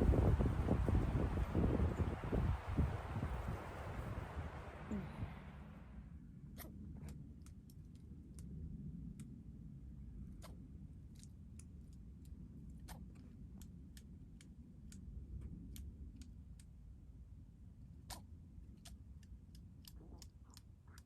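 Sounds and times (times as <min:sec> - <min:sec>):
low background noise: 0:00.0 - 0:21.0
faint sharp clicks: 0:06.6 - 0:09.4, 0:10.3 - 0:17.0, 0:18.0 - 0:21.0.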